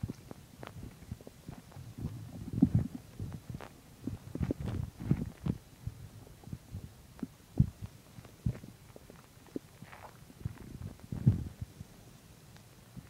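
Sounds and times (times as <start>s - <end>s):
stomach gurgling and rumbling: 0.0s - 12.0s.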